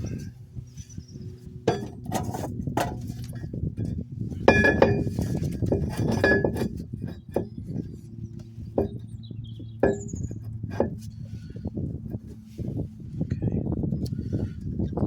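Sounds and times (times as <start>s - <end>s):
metal tools clinking: 4.4s - 6.8s
ringing metal strikes: 9.8s - 10.3s.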